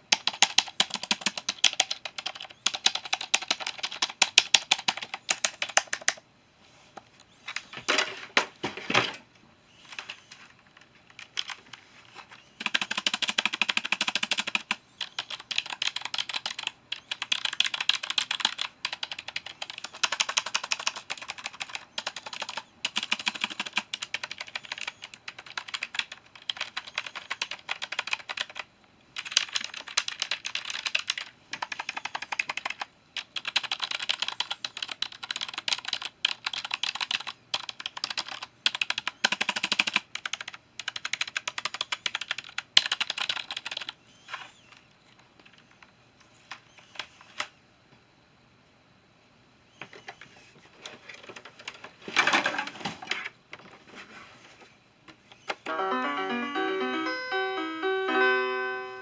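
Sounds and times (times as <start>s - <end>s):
computer keyboard typing: 0.0s - 6.2s, 9.9s - 11.8s, 12.6s - 45.9s.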